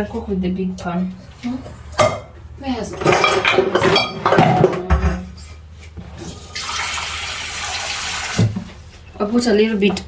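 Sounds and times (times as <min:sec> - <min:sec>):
pans knocking together: 0:02.9 - 0:05.2
tap water running into pan: 0:06.5 - 0:08.6.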